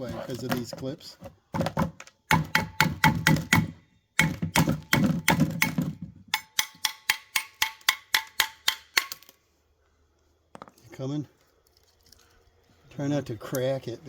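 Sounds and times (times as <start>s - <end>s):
hammer striking metal bracket: 2.3s - 9.2s.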